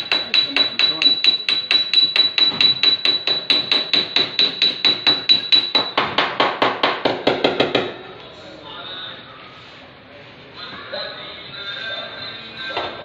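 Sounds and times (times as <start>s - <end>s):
hammer tapping sheet metal: 0.0s - 8.0s.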